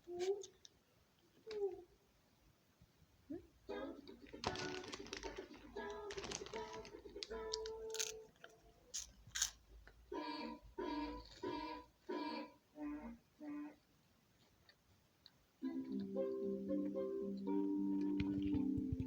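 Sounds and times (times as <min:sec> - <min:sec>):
person humming tones: 0:15.6 - 0:19.0.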